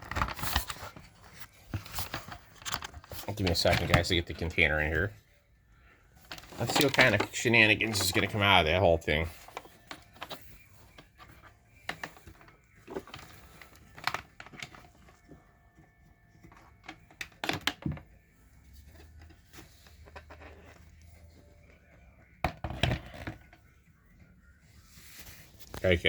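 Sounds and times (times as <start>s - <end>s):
plastic parts clicking and knocking: 0.0s - 5.1s, 6.2s - 15.3s, 16.4s - 18.2s, 22.4s - 23.6s.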